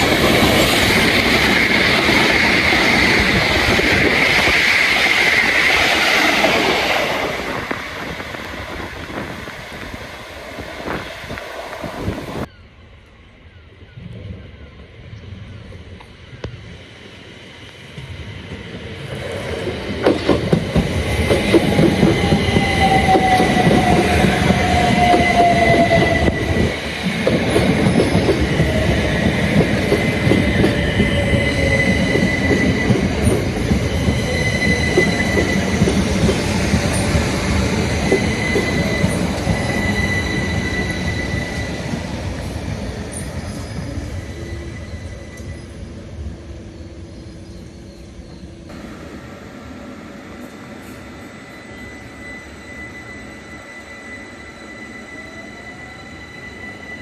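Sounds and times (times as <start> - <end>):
electric train running: 0.0 - 12.5, 17.8 - 46.6
wheel squeal: 21.3 - 46.3, 51.0 - 57.0.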